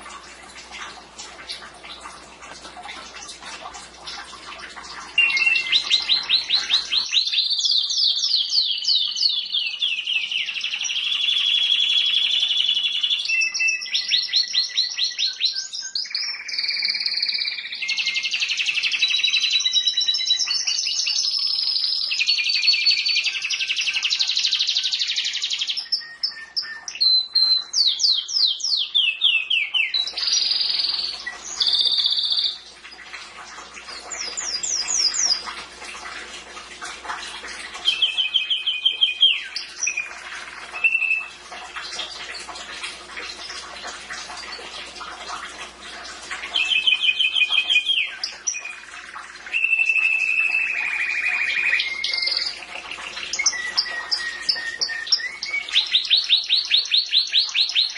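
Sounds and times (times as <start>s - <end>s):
canary singing trills: 5.1s - 32.6s, 33.9s - 35.5s, 37.8s - 41.3s, 49.5s - 57.9s.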